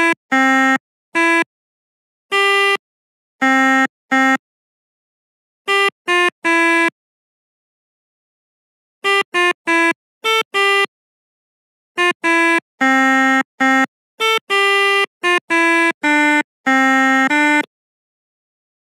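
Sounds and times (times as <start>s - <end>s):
melodica playing a tune: 0.0s - 1.5s, 2.3s - 2.8s, 3.4s - 4.4s, 5.7s - 7.0s, 9.0s - 10.9s, 12.0s - 17.7s.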